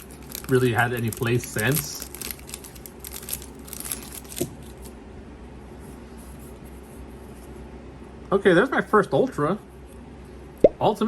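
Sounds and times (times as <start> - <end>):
cards and foil wrapper rustling: 0.0 - 5.0
low steady hum: 0.0 - 11.0.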